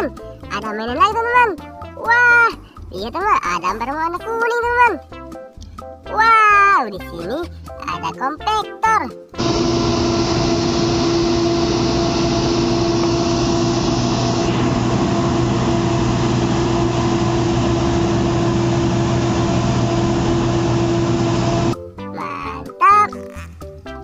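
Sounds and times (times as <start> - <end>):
heavy machine engine droning: 9.4 - 21.8.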